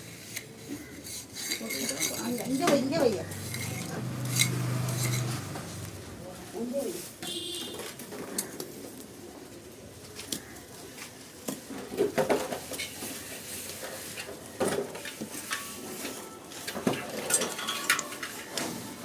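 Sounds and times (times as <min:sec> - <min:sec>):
hard objects clinking and scraping: 0:00.0 - 0:06.2, 0:11.4 - 0:19.0.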